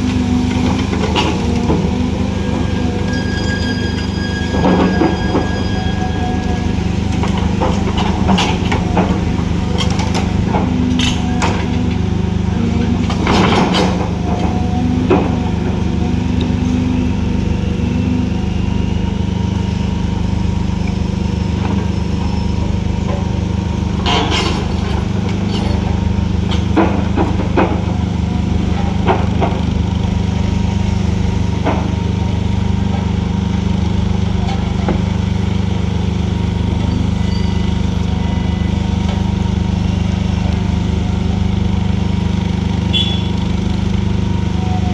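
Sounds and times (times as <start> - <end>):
diesel excavator engine running: 0.0 - 44.9.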